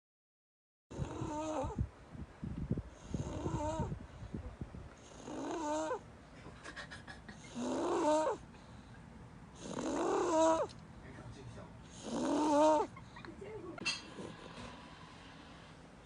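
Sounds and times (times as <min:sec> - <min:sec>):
toddler snoring: 0:00.9 - 0:01.9, 0:03.0 - 0:04.0, 0:05.0 - 0:06.0, 0:07.5 - 0:08.5, 0:09.6 - 0:10.7, 0:11.9 - 0:13.0.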